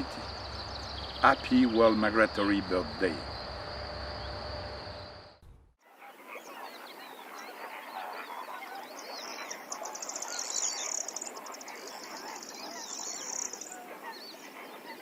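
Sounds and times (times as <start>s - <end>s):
flock of birds chattering: 0.0s - 3.6s, 6.0s - 15.0s.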